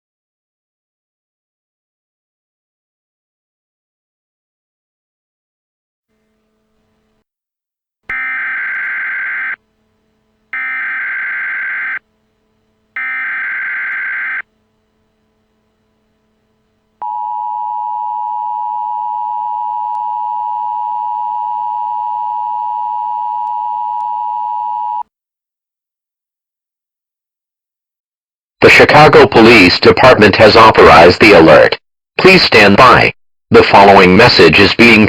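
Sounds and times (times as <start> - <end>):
data tone bursts: 8.1 - 9.6, 10.6 - 12.0, 13.0 - 14.5
steady two-tone attention signal: 8.1 - 9.7, 10.5 - 12.1, 13.0 - 14.5, 17.0 - 25.0.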